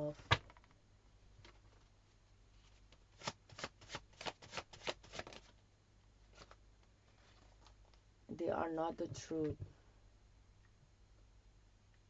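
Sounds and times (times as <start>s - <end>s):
cards being shuffled: 2.6s - 5.6s, 6.3s - 6.6s.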